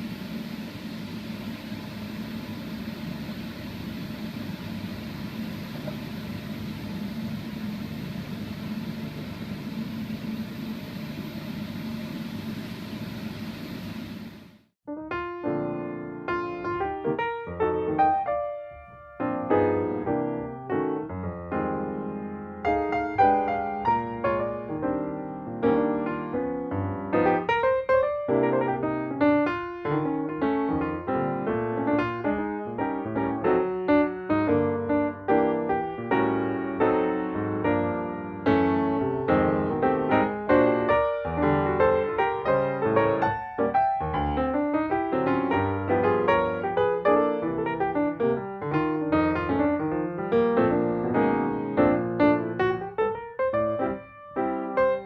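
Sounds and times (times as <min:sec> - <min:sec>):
gentle piano melody: 0:14.9 - 0:55.0.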